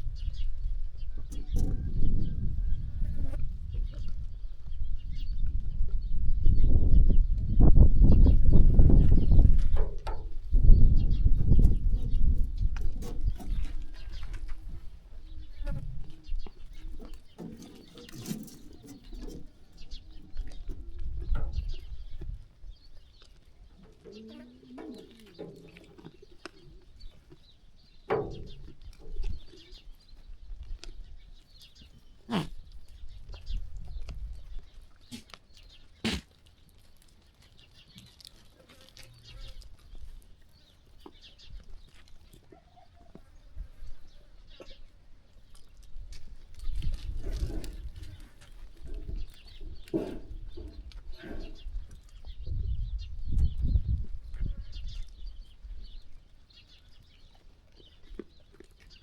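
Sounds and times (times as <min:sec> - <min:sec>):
birds: 0:00.0 - 0:59.0
sheep shuffling and calling: 0:08.1 - 0:59.0.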